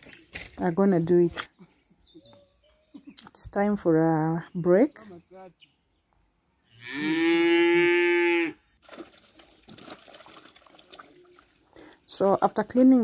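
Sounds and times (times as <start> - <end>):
cow mooing: 6.7 - 8.6.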